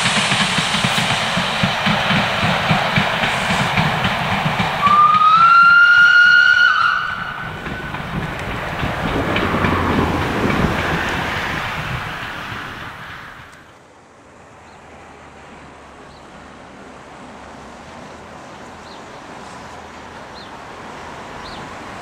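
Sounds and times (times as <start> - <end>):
working locomotive and train noise: 0.0 - 22.0
steam locomotive whistle: 4.7 - 8.5.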